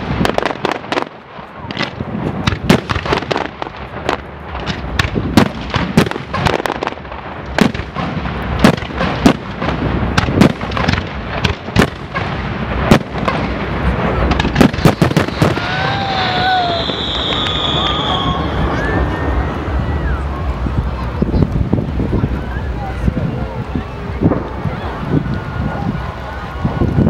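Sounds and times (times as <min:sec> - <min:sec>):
fireworks bangs and crackles: 0:00.0 - 0:27.0
low rumble: 0:12.4 - 0:27.0.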